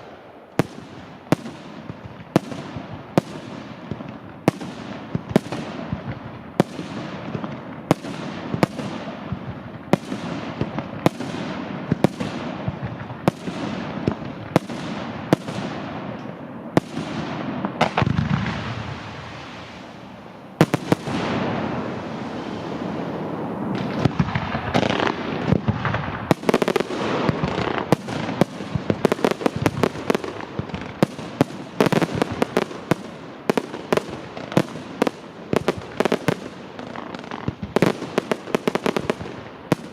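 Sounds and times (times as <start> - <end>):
fireworks crackle and rumble: 0.0 - 39.9.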